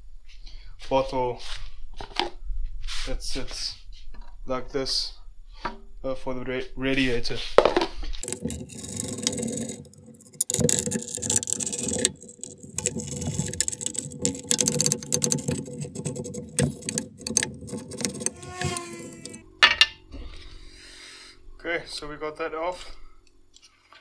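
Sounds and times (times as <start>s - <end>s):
metal parts rattling: 8.2s - 19.4s.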